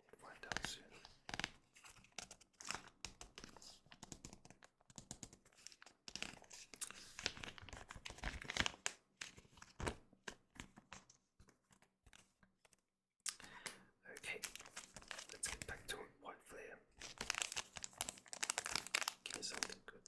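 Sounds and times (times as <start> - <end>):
foil wrapper crinkling and tearing: 6.2 - 8.9, 14.4 - 15.7, 17.0 - 19.8.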